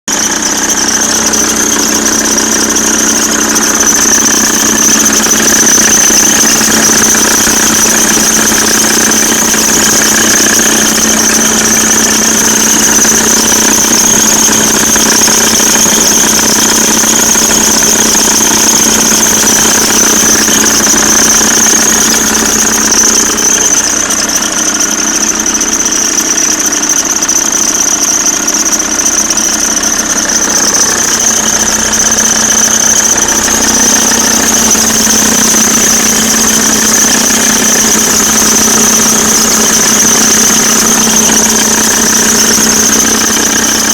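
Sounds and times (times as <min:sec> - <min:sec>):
diesel engine running: 0:00.1 - 0:43.9
steady high-pitched whine: 0:00.1 - 0:43.9.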